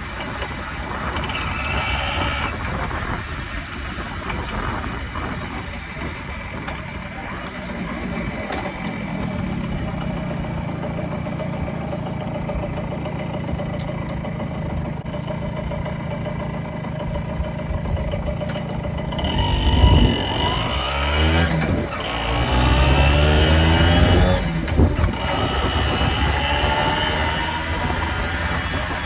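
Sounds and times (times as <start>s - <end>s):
moped engine idling and revving: 0.0s - 29.0s.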